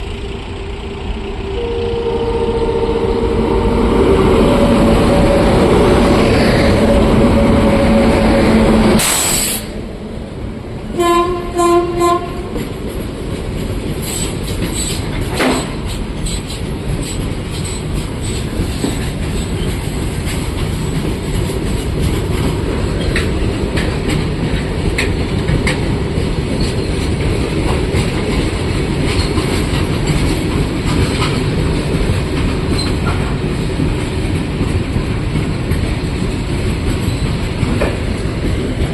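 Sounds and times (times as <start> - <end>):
loud steady hum with tones: 0.0 - 9.8
train rumble: 0.0 - 38.9
train horn blasts: 0.1 - 9.2, 10.9 - 12.6
train wheels clattering: 11.3 - 38.9.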